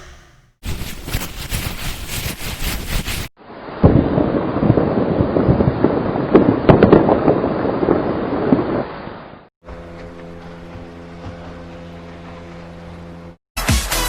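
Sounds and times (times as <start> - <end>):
avalanche rumble: 3.5 - 13.3.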